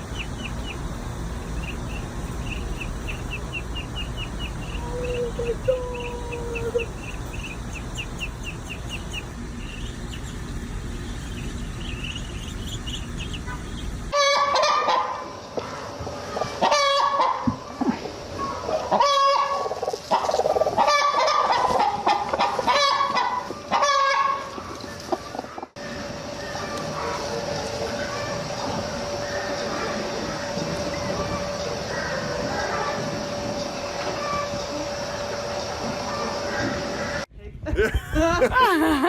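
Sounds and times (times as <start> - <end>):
domestic fowl calling: 0.0 - 10.1, 13.2 - 17.5, 18.4 - 24.6
faint high chirping: 0.0 - 13.9
low rumble of wind: 0.0 - 14.2.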